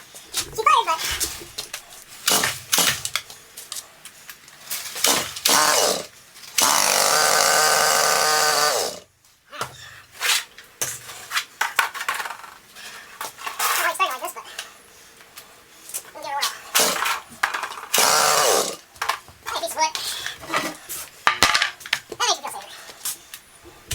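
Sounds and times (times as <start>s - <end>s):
chainsaw pull-starting and sputtering: 0.3s - 3.1s, 4.9s - 9.1s, 16.7s - 17.2s, 17.9s - 18.9s.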